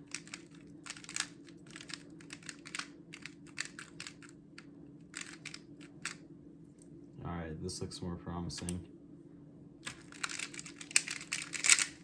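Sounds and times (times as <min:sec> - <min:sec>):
steady low hum: 0:00.0 - 0:12.0
puzzle cube clicking: 0:00.1 - 0:04.3, 0:05.2 - 0:06.2, 0:09.9 - 0:12.0.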